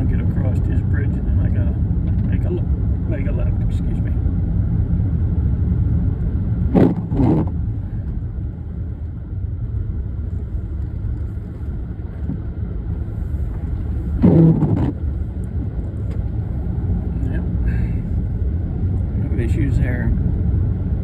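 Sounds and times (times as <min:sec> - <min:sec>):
car driving rumble inside cabin: 0:00.0 - 0:21.0
windshield wipers sweeping: 0:06.7 - 0:07.8, 0:10.3 - 0:16.6.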